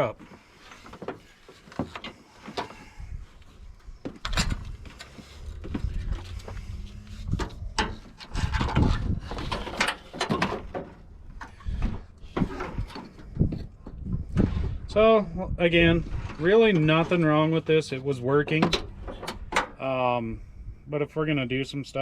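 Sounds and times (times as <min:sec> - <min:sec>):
hand tools knocking and scraping: 0:07.3 - 0:14.0.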